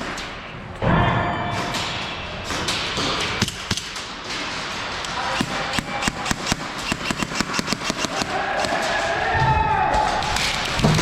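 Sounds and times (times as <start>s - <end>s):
airsoft guns firing: 2.4s - 9.3s.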